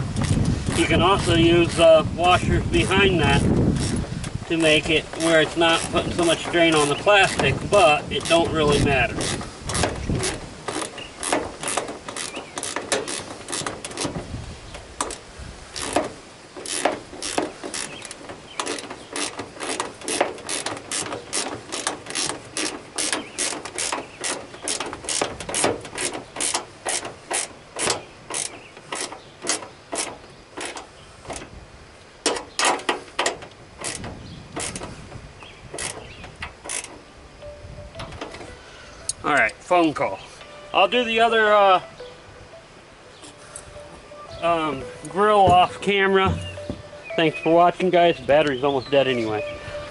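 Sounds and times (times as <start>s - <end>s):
hand ratchet clicking: 0.2s - 14.2s, 15.8s - 31.5s, 32.2s - 34.9s, 35.7s - 37.0s.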